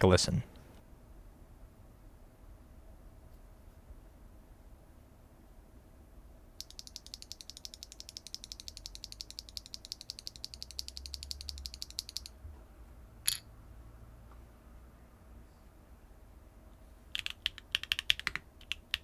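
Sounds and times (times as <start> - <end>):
mechanical keyboard typing: 6.6 - 12.3, 17.1 - 19.0.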